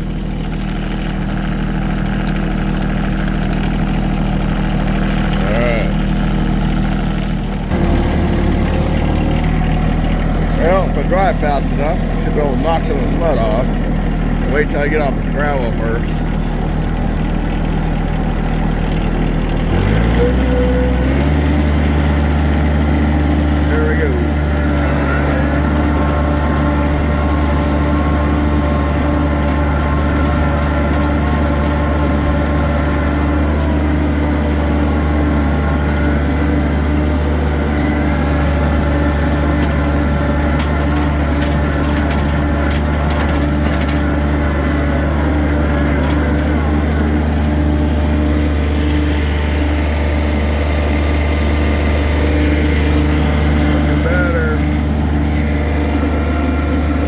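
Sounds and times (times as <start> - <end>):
vehicle engine running: 0.0 - 57.0
rattling clicks: 38.9 - 47.7.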